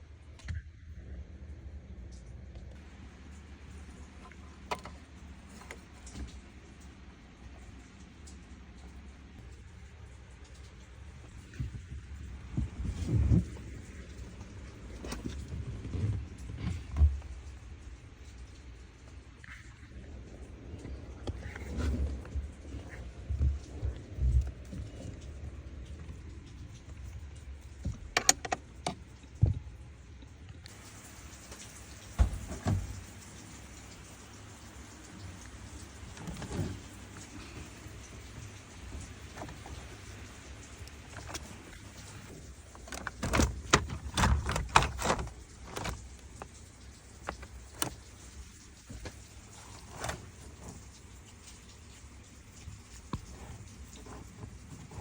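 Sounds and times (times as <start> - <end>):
dull thumps: 32.1 - 33.1.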